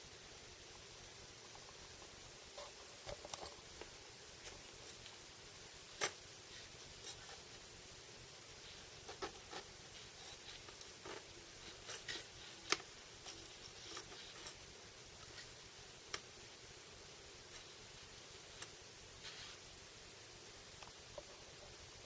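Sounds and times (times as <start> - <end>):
faint steady hiss: 0.0 - 22.0.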